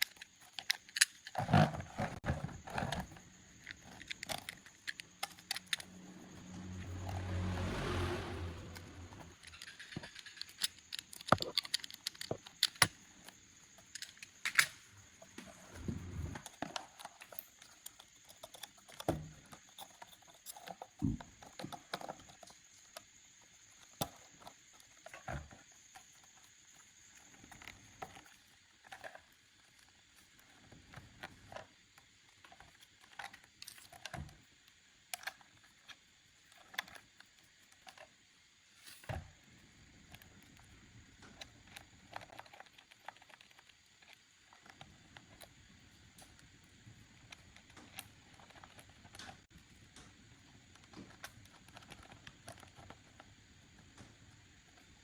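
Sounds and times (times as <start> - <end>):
parts clicking and tapping: 8.7 - 15.5.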